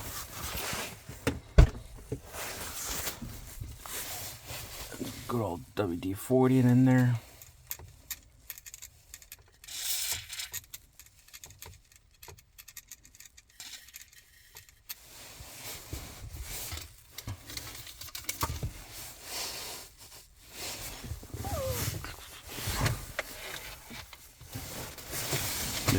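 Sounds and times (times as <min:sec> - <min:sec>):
rubbing and rustling: 0:00.0 - 0:05.4, 0:13.6 - 0:25.9.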